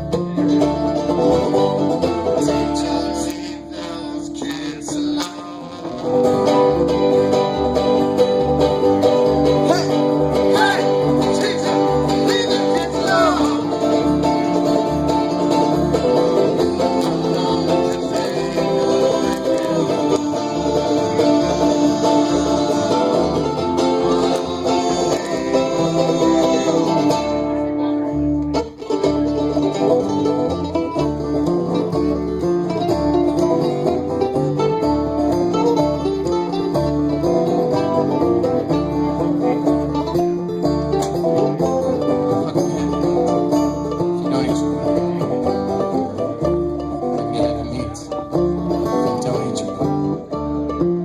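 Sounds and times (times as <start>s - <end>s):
bass line: 0.0s - 51.0s
live band with plucked strings: 0.0s - 51.0s.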